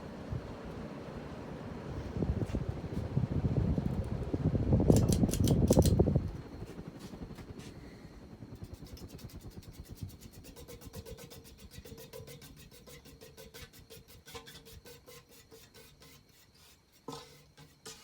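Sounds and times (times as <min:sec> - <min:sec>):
ceiling fan blades whooshing: 0:00.0 - 0:14.0
faint motor hum: 0:00.0 - 0:18.0.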